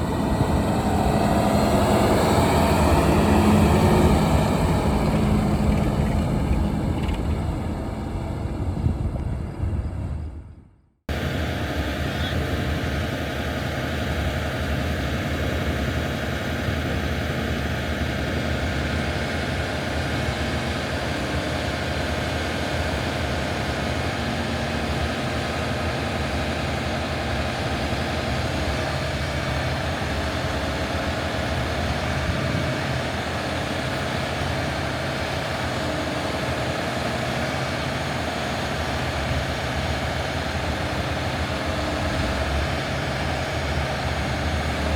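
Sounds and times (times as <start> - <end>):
diesel machinery engine rumble: 0.0 - 24.2, 24.8 - 44.9.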